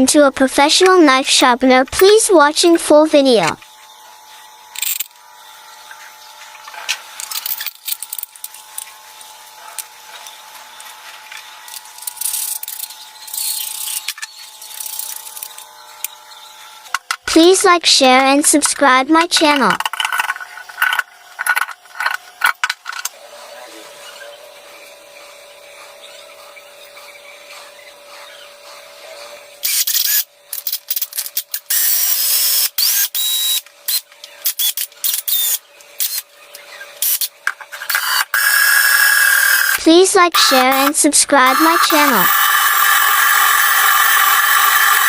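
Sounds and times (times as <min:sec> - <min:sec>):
power drill whining: 0:23.6 - 0:31.0, 0:31.6 - 0:36.2, 0:37.0 - 0:45.0.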